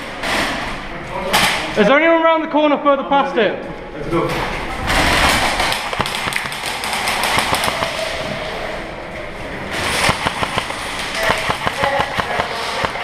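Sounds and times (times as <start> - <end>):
airsoft guns firing: 5.0 - 8.2, 9.8 - 13.0.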